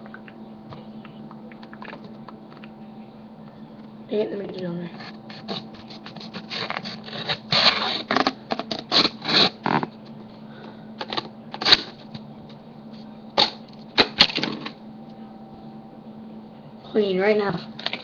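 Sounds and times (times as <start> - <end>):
knife cutting paper plate: 5.0 - 9.9.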